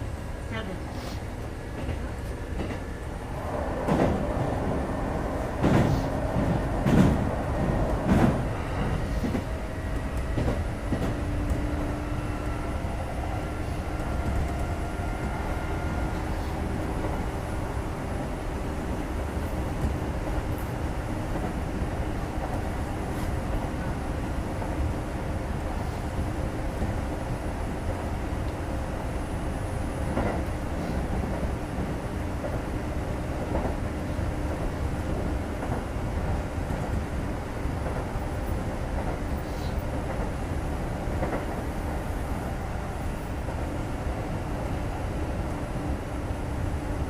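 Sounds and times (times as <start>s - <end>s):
train wheels rumbling on rails: 0.0s - 47.0s
clacks over rail joints: 1.7s - 2.9s, 5.6s - 11.9s, 41.2s - 41.6s.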